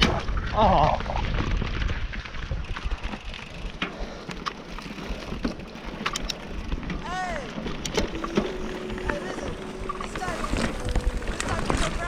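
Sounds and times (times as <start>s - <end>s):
bike tyre noise: 0.0s - 12.0s
clicks and knocks from bike: 0.0s - 12.0s
wind on microphone: 4.8s - 12.0s.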